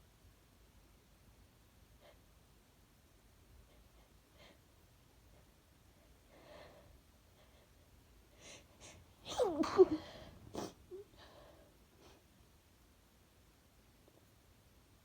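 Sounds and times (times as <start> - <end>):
woman sneezing: 9.3 - 10.8.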